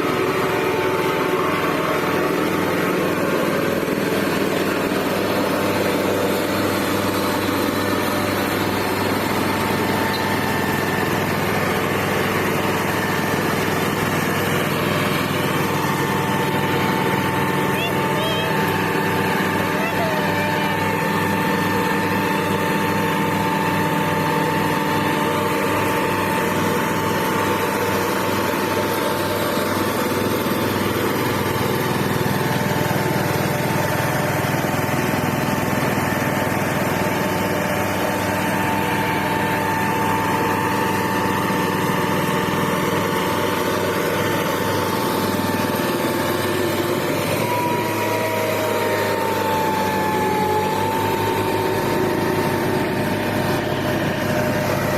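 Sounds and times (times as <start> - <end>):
road roller engine running: 0.0 - 54.9.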